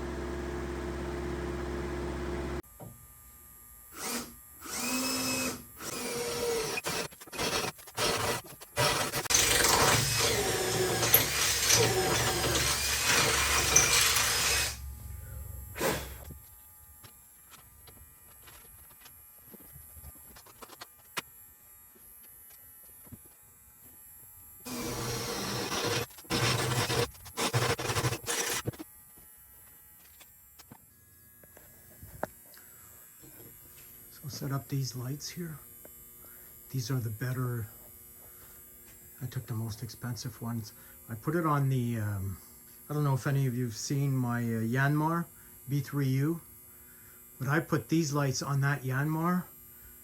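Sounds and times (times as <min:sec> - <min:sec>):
handheld power drill running: 0:03.9 - 0:21.2, 0:24.6 - 0:28.9.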